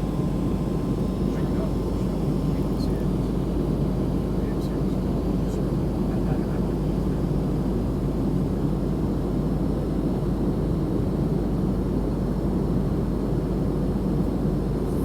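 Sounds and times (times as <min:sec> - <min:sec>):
airliner cabin engine drone: 0:00.0 - 0:10.6.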